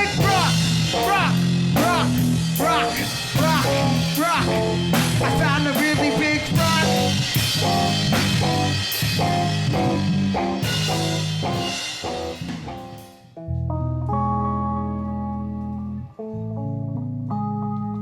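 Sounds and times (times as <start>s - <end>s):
live instrumental band music: 0.0s - 13.6s.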